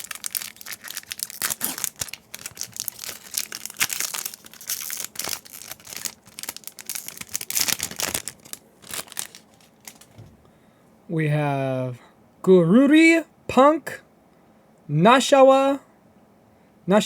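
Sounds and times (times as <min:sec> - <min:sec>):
plastic wrapper crinkling and tearing: 0:00.0 - 0:10.2.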